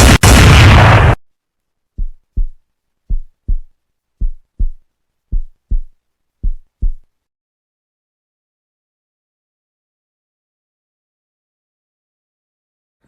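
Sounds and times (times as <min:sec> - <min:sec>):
heartbeat thumps: 0:02.0 - 0:07.1.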